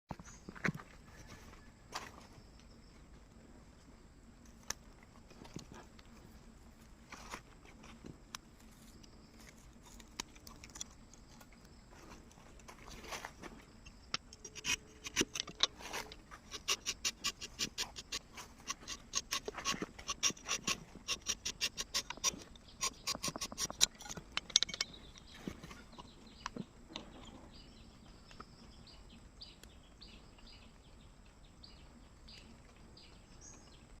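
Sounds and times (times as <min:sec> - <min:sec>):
blade cutting bark: 0:13.9 - 0:25.2.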